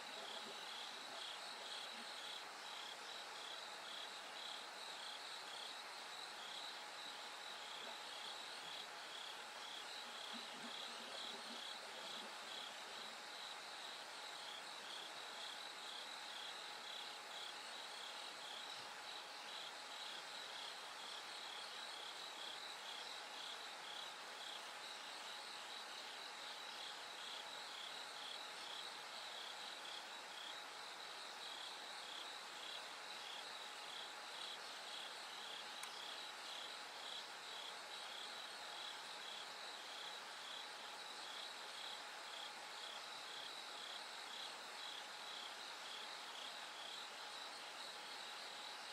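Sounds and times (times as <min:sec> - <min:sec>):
crickets chirping: 0:00.0 - 0:48.9
faint hiss of night insects: 0:00.0 - 0:48.9.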